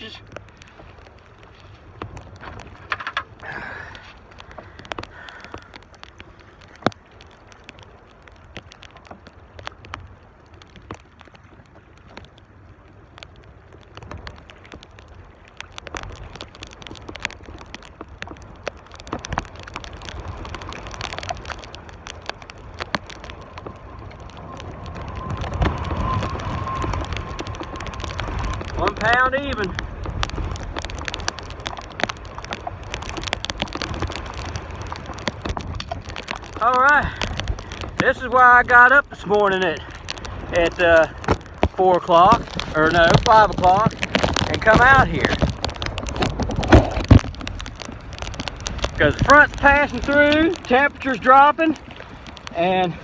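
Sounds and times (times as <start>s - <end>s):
sharp clicks and knocks: 2.0s - 6.0s, 40.0s - 51.2s
gusty wind buffeting microphone: 18.4s - 53.0s.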